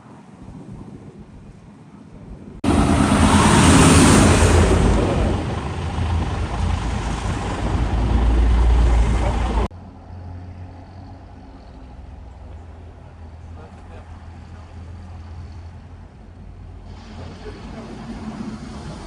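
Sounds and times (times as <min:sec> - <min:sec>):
loud steady motor rumble: 0:02.6 - 0:09.7
rushing noise: 0:02.6 - 0:09.7, 0:14.3 - 0:19.0.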